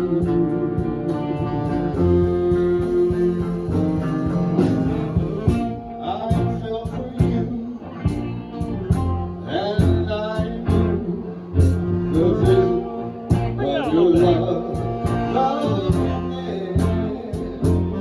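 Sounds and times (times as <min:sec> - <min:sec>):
bass: 0:00.0 - 0:18.0
drums: 0:00.0 - 0:18.0
guitar: 0:00.0 - 0:18.0
person singing: 0:00.0 - 0:18.0.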